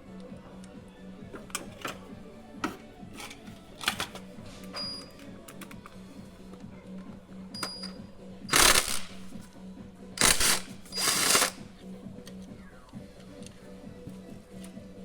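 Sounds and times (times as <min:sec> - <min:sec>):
hand tools clicking on metal: 0:08.5 - 0:09.2, 0:10.2 - 0:11.6.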